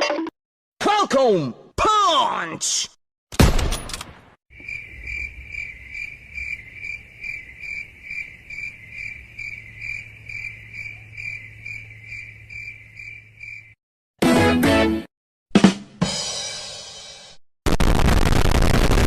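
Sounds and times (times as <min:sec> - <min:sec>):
crickets chirping: 0:04.5 - 0:13.8.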